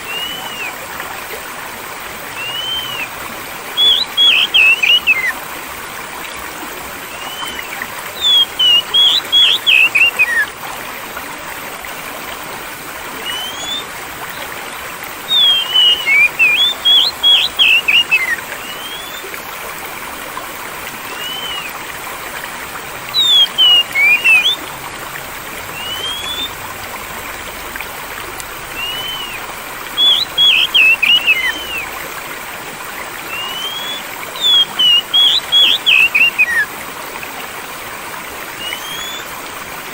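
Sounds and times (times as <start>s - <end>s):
songbird singing: 0.0s - 0.8s, 2.3s - 5.4s, 7.1s - 10.5s, 13.1s - 14.5s, 15.2s - 19.4s, 21.0s - 22.4s, 23.0s - 24.8s, 25.6s - 26.7s, 27.6s - 31.9s, 32.9s - 36.7s, 38.6s - 39.3s
water flowing: 0.0s - 39.9s.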